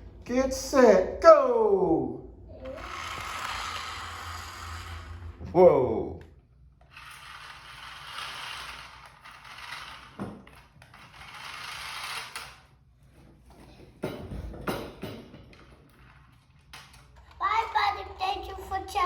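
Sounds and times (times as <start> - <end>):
toy car motor whirring: 2.5 - 5.4, 6.8 - 12.7.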